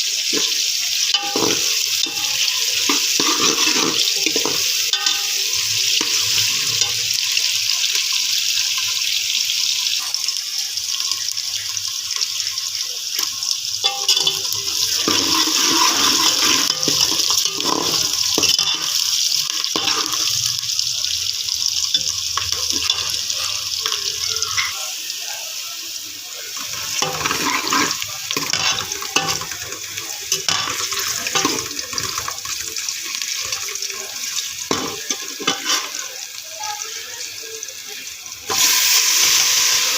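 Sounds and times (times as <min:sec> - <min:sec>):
food frying in oil: 0:00.0 - 0:39.9
spoon stirring in a pan: 0:00.2 - 0:25.0, 0:26.5 - 0:39.6.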